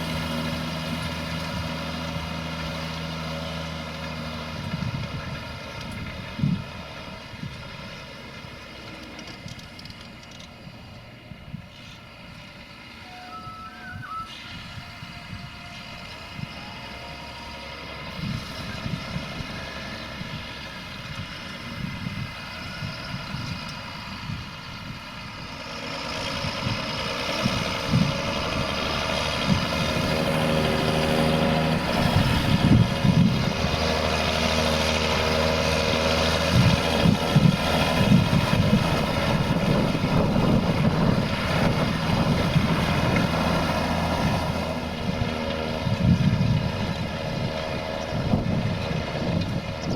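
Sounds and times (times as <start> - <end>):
tractor engine running under load: 0.0 - 49.9.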